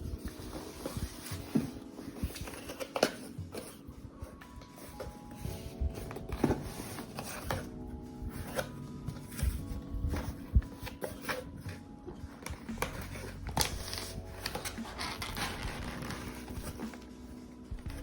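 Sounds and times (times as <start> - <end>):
packaging crinkling and rustling: 0.0 - 18.0
taps and clicks on packaging: 0.8 - 3.8.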